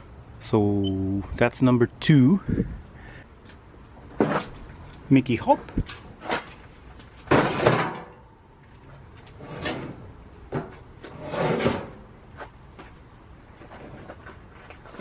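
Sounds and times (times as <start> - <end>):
hard objects scraping and sliding: 8.9 - 12.6, 13.6 - 15.0.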